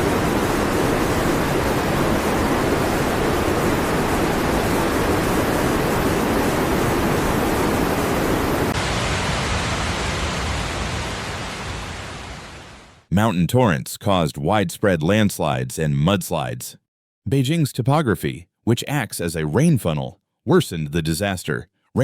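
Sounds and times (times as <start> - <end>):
water rushing: 0.0 - 13.1.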